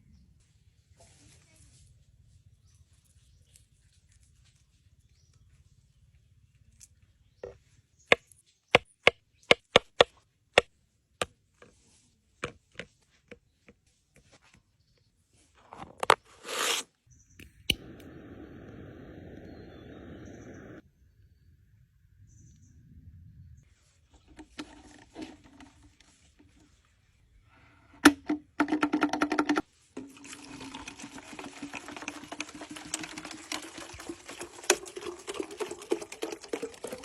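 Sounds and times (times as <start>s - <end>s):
steady hiss: 17.8s - 20.8s.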